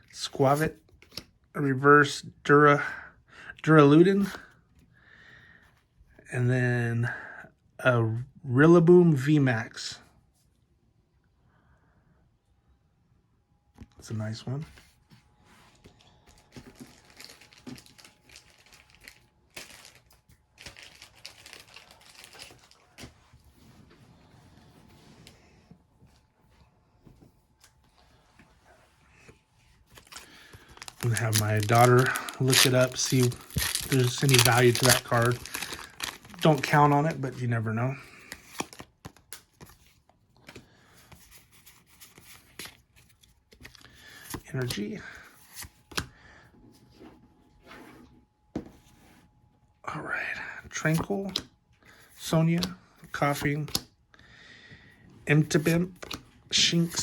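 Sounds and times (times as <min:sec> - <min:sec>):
trading cards shuffled by hand: 0:15.7 - 0:23.4, 0:29.9 - 0:37.4, 0:50.8 - 0:51.4, 0:52.2 - 0:53.8.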